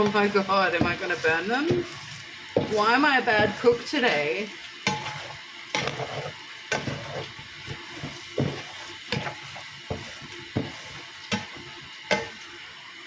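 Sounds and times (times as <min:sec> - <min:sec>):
eggs and onions sizzling in a pan: 0:00.0 - 0:13.0
utensil knocking against a pan: 0:07.7 - 0:12.4.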